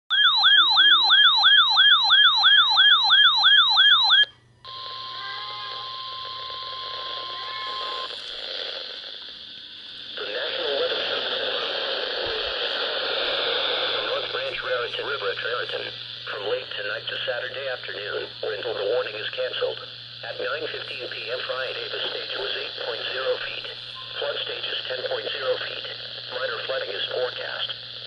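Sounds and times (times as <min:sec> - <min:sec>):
electronic siren yelping: 0:00.1 - 0:08.3
radio static: 0:00.7 - 0:28.0
synthesized voice: 0:10.2 - 0:27.4.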